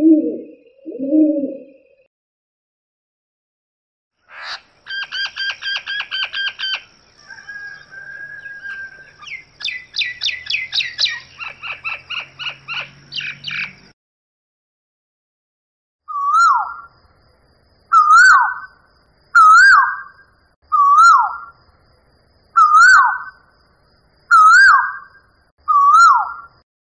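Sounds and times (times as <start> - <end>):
bird calling: 4.3 - 13.9.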